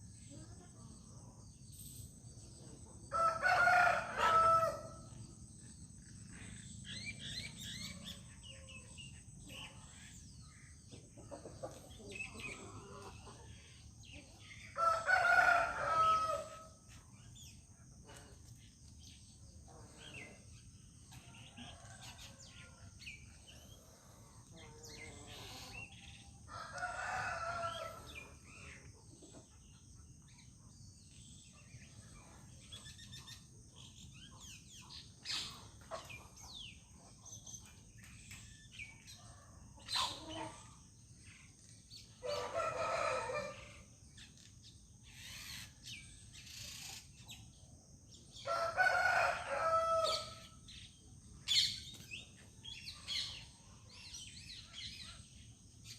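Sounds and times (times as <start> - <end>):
rooster crowing: 3.1 - 5.0, 14.8 - 16.7, 26.5 - 28.2, 42.2 - 43.7, 48.4 - 50.4
small birds chirping: 5.1 - 43.2.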